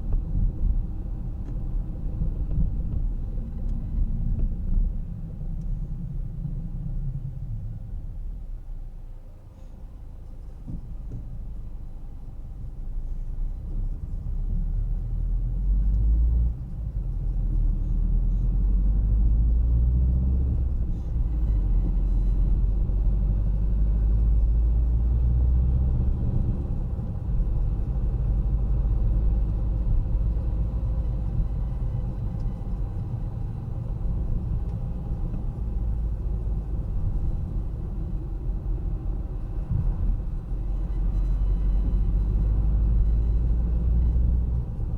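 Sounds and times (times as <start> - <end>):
car engine and tyres rumbling: 0.0 - 44.9.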